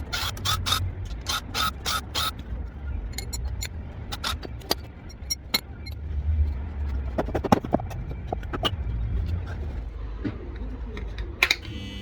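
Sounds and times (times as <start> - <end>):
steady low rumble: 2.3 - 11.4
metallic clicks of tools: 3.1 - 6.0.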